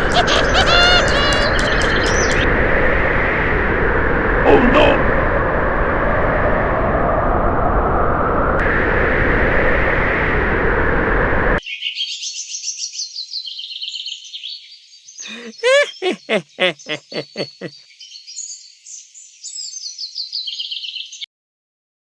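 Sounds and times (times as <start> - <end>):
rapid falling bird calls: 0.0 - 2.4.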